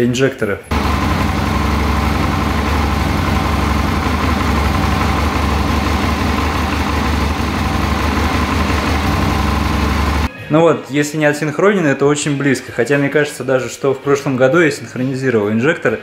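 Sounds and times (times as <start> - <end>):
motorcycle engine idling: 0.7 - 10.3.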